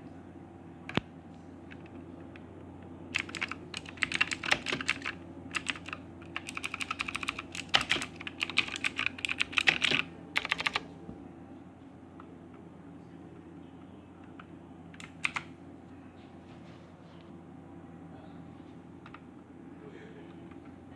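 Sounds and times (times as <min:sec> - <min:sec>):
mechanical keyboard typing: 0:03.1 - 0:10.8, 0:15.0 - 0:15.5.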